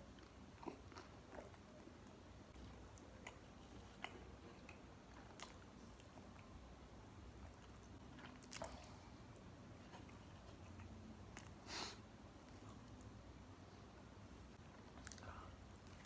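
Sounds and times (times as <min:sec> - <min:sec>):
person chewing: 0:00.1 - 0:01.9, 0:02.6 - 0:06.5, 0:07.4 - 0:09.2.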